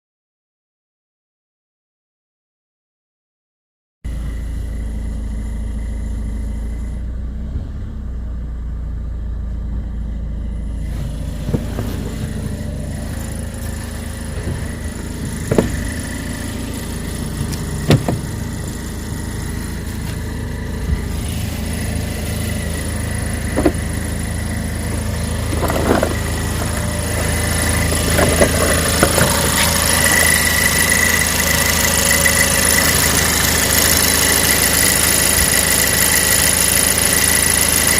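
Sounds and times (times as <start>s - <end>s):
car engine idling: 4.1s - 37.9s
exhaust bracket rattling knocks: 11.4s - 19.2s, 22.3s - 31.2s.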